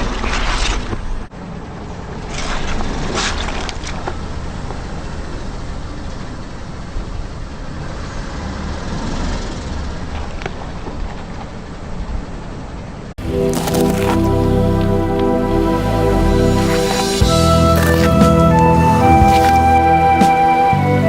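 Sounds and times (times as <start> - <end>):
car running and rolling: 0.0 - 15.5.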